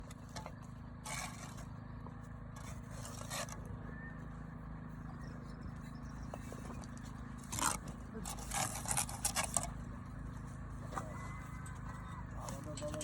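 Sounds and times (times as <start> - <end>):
steady low hum: 0.0 - 13.0
short scrapes: 2.6 - 3.6, 7.4 - 9.7.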